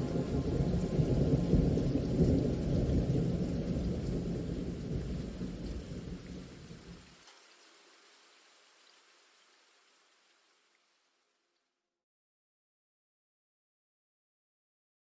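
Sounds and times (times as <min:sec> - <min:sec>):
rolling thunder: 0:00.0 - 0:07.0
rain hiss: 0:00.0 - 0:11.3.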